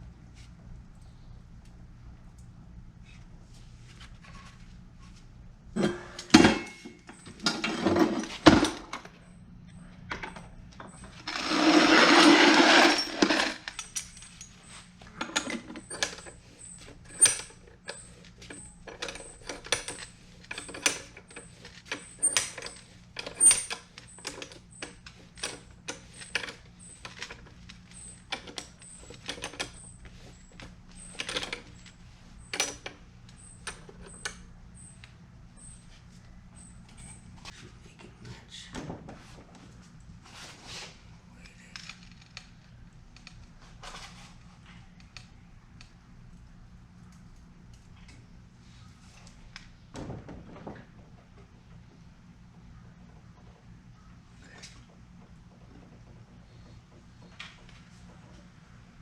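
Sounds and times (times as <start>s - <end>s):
metal tools clinking: 5.8s - 8.9s, 10.2s - 35.0s.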